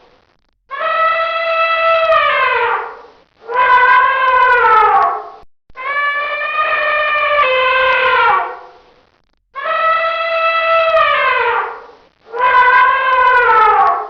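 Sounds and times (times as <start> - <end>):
elephant trumpeting: 5.8 - 8.8, 9.6 - 14.0.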